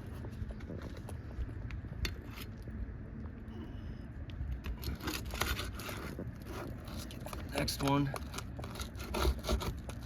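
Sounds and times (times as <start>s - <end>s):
pry bar scraping shingles: 4.8s - 10.0s.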